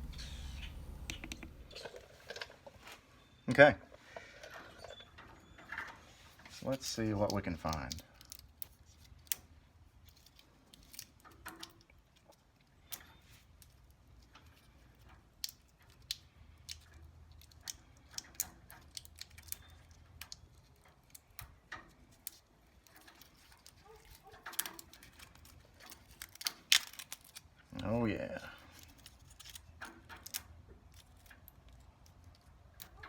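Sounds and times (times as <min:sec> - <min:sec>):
hands picking at electrical tape: 0:06.3 - 0:33.0.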